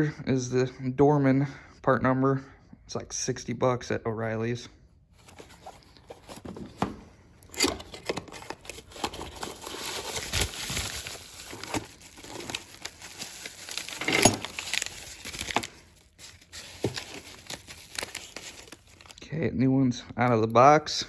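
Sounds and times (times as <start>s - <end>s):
packaging crinkling and tearing: 7.4s - 19.2s.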